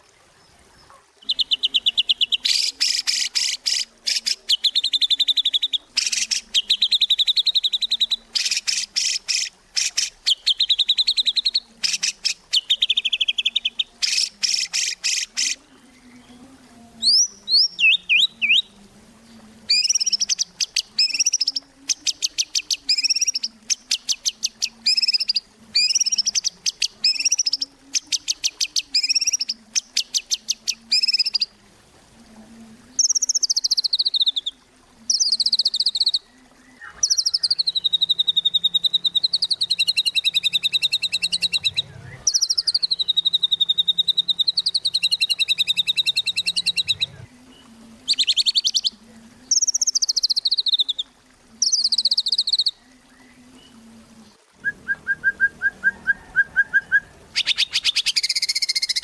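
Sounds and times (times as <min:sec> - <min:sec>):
songbird singing trills: 0:00.0 - 0:31.6, 0:32.9 - 0:59.0
faint low hum: 0:15.6 - 0:33.1, 0:36.1 - 0:49.9, 0:52.7 - 0:57.4.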